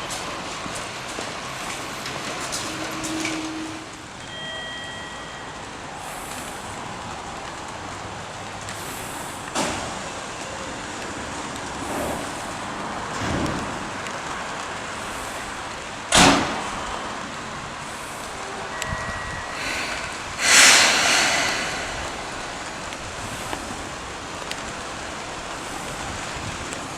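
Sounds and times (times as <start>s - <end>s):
train rumbling: 0.0s - 8.8s, 11.2s - 26.9s
loud hissing burst: 19.4s - 24.2s.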